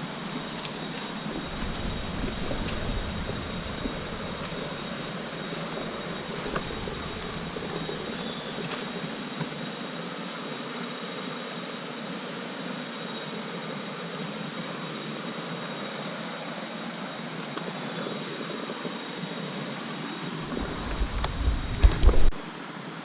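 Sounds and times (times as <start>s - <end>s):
thin high whine: 0.0s - 16.8s
stream water flowing: 0.0s - 22.8s.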